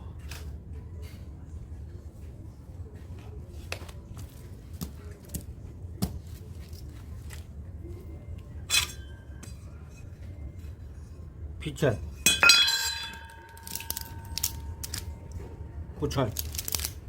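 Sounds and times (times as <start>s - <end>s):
ringing metal clink: 8.7s - 10.2s, 12.1s - 15.1s.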